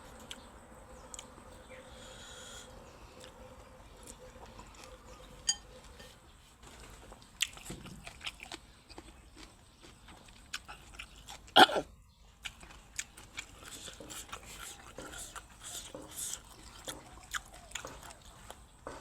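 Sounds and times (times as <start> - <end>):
person chewing: 3.1 - 5.2, 7.2 - 18.7.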